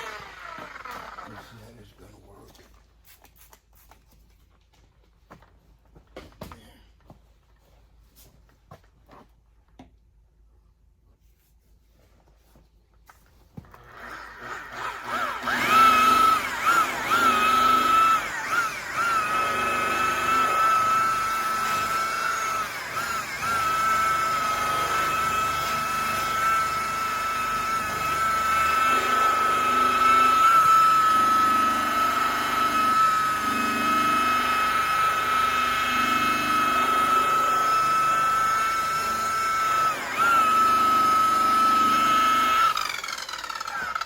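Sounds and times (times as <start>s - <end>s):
rotary buffer whining: 13.8s - 44.0s.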